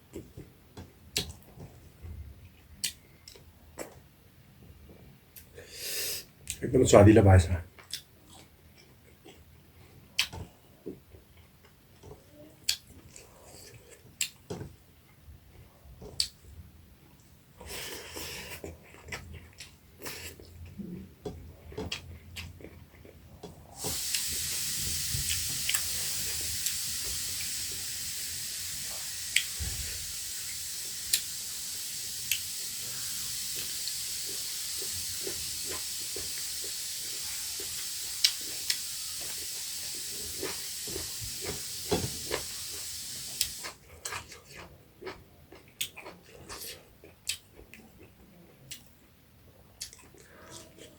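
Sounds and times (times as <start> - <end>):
eating clicks and smacks: 1.1 - 1.5, 7.8 - 9.4, 10.1 - 10.5, 43.4 - 48.9, 49.8 - 50.3
fish frying in hot oil: 23.8 - 43.6.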